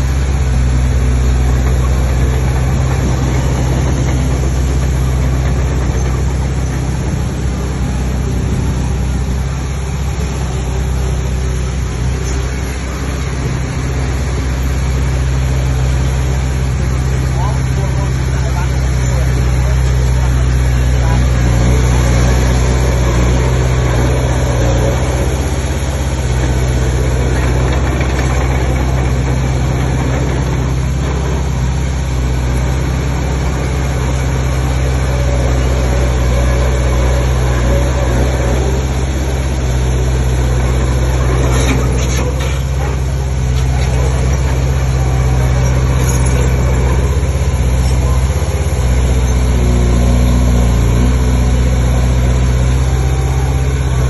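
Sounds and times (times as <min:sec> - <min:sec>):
diesel engine running: 0:00.0 - 0:54.0
rattles: 0:36.6 - 0:49.7.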